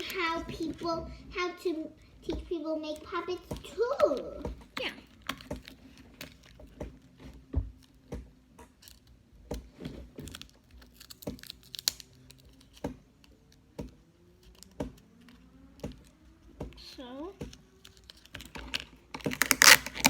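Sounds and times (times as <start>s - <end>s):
paper crinkling: 8.6s - 13.7s, 17.5s - 20.0s.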